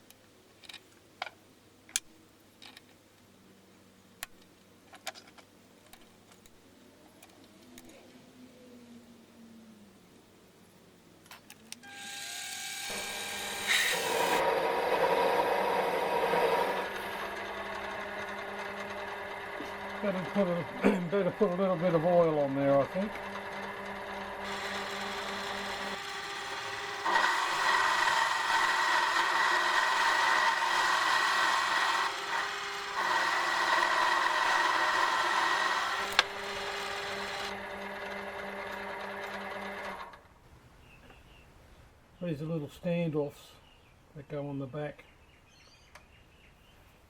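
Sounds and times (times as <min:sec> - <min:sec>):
machine hum: 0:11.7 - 0:40.2
machine tool cutting metal: 0:11.8 - 0:22.0, 0:22.8 - 0:37.6.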